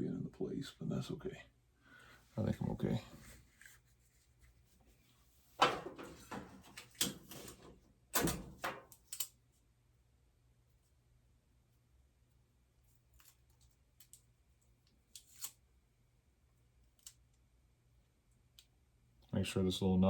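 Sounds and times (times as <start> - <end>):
parts knocking and scraping: 5.6 - 9.3.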